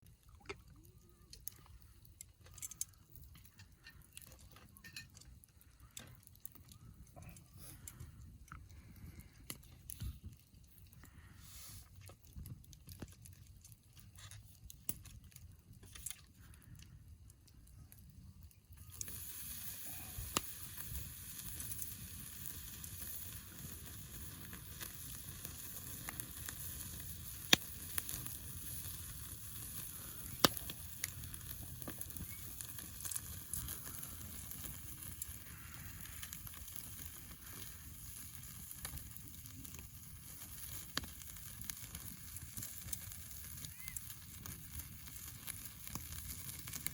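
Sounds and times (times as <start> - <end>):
campfire popping: 0.0 - 46.9
steak sizzling on a grill: 18.8 - 46.9.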